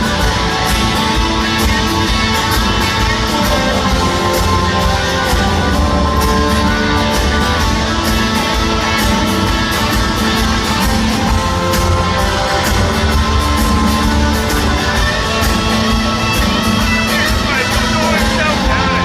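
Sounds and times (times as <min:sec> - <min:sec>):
rock band playing instrumental: 0:00.0 - 0:19.0.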